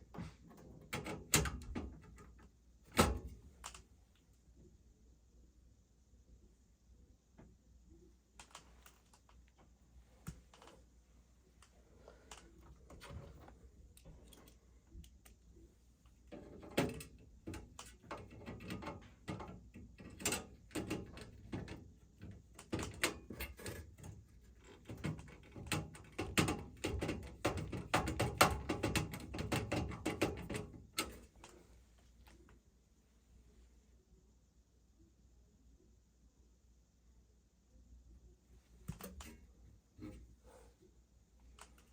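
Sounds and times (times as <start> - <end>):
clicks and knocks of metal parts: 0.1 - 3.9, 11.5 - 31.6, 38.8 - 40.2, 41.5 - 41.9.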